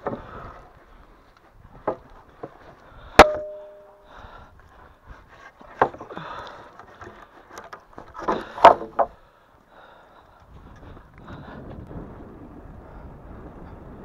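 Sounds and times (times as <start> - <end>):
sharp wooden knocks: 1.8 - 3.9, 5.7 - 9.2.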